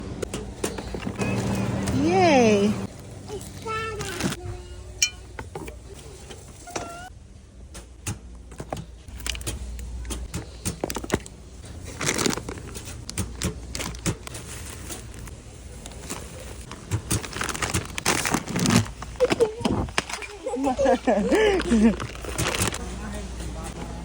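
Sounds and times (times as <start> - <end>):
grocery items clattering: 0.0 - 7.1, 8.3 - 24.0
packaging rustling: 10.8 - 22.8.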